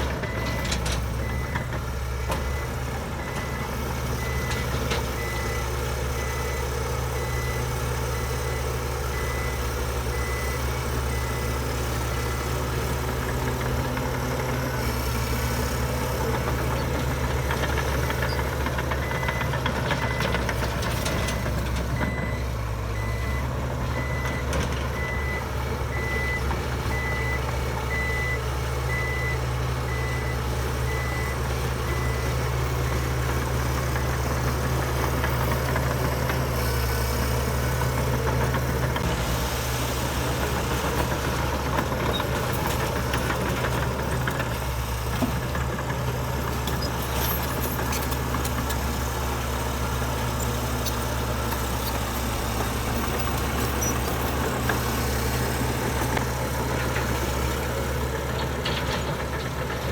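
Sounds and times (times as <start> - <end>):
reversing alarm beeping: 0.0 - 14.6, 15.5 - 36.3
diesel machinery running: 0.0 - 59.9.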